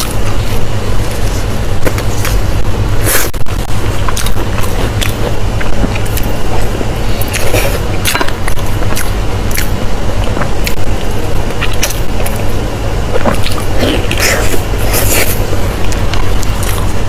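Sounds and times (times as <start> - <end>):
steady low hum: 0.0 - 17.0
wet chewing and mouth smacking: 4.0 - 12.5.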